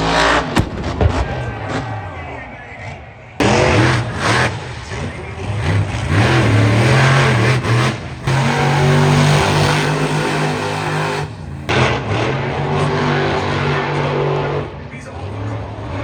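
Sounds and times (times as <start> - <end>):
race car engine running: 3.0 - 16.0.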